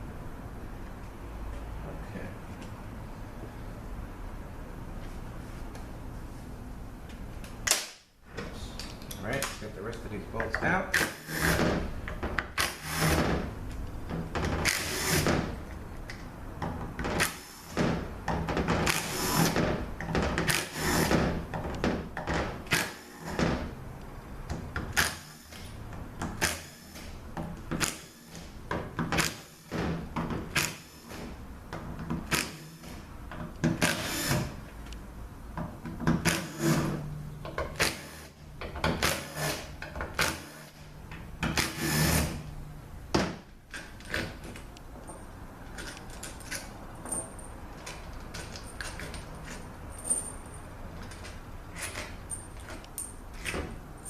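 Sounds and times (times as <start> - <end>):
tools clicking and scraping on metal: 43.7 - 54.0.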